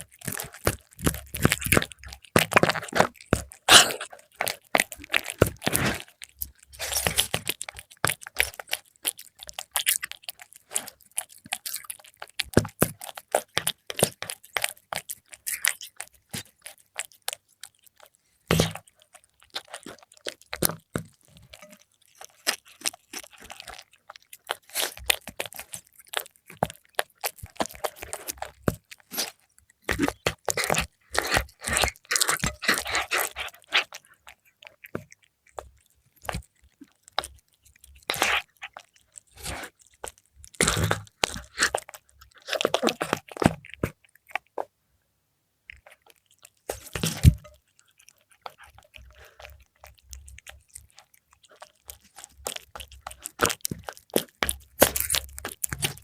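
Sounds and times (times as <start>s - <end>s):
cat chewing and crunching fish: 0.0s - 45.0s, 45.6s - 56.0s.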